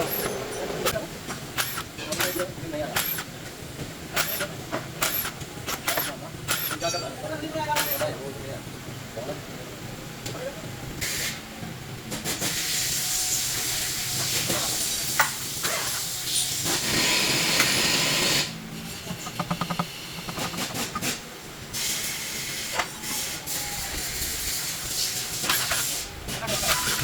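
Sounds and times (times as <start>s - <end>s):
loud pressurised hiss: 12.2s - 18.6s, 20.6s - 27.0s.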